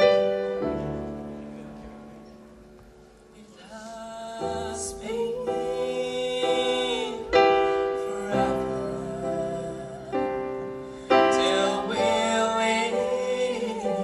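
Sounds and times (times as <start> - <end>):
keyboard playing chords and melody: 0.0 - 3.2, 4.4 - 14.0.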